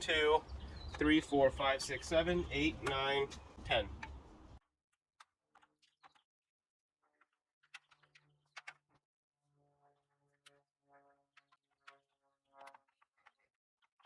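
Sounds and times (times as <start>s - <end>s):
faint plastic clicks: 1.8s - 4.6s.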